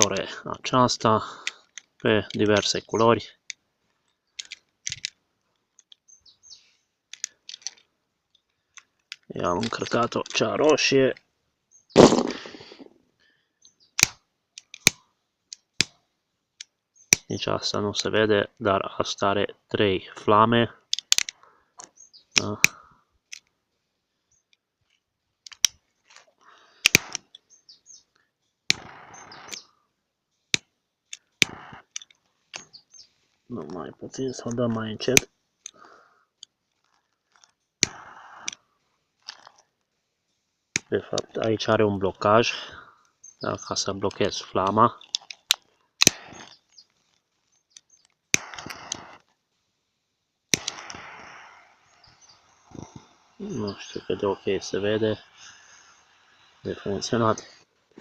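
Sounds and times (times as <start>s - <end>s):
torch gas jet hissing: 48.4s - 49.2s, 50.5s - 57.6s.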